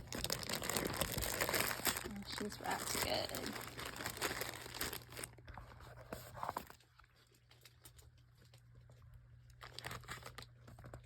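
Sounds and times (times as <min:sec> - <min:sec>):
tissue paper rustling: 0:00.0 - 0:05.3.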